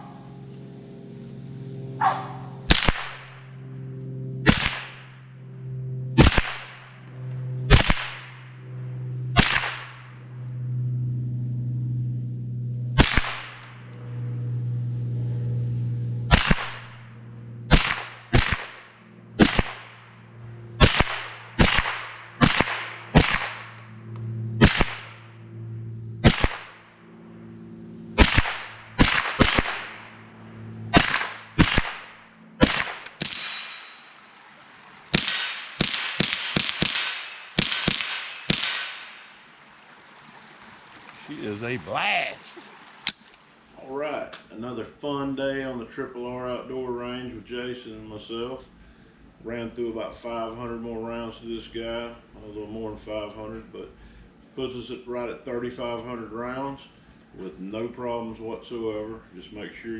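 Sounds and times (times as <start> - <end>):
steady low hum: 0.0 - 59.9
rifle shots cracking: 2.0 - 3.3, 4.4 - 5.1, 6.2 - 6.9, 7.7 - 8.4, 9.4 - 10.1, 13.0 - 13.8, 16.3 - 17.0, 17.7 - 18.8, 19.4 - 20.1, 20.8 - 24.0, 24.6 - 25.2, 26.2 - 27.0, 28.2 - 30.2, 30.9 - 34.2, 35.1 - 39.4.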